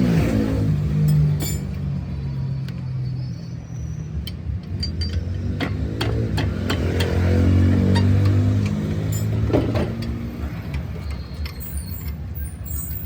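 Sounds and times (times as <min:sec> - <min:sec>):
sharp clicks and knocks: 0:04.2 - 0:12.2.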